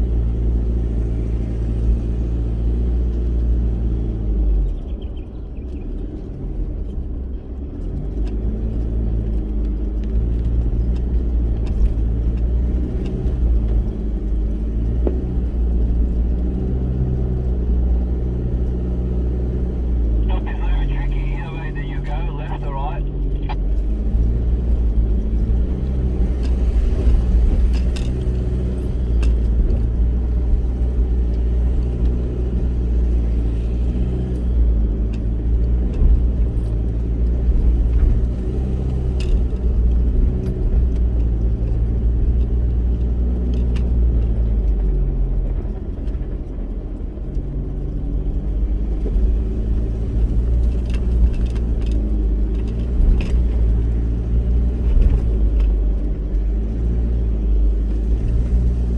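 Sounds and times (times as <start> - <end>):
off-road vehicle engine: 0.0 - 58.9.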